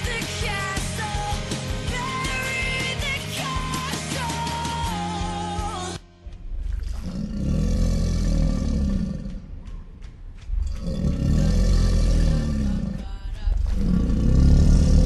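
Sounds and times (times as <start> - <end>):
big cat roaring: 6.7 - 9.4, 10.5 - 15.0.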